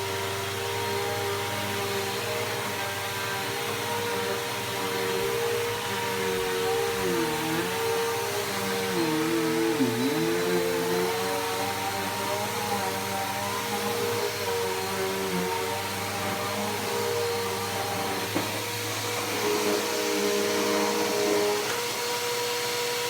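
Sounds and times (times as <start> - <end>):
vacuum cleaner running: 0.0 - 23.0.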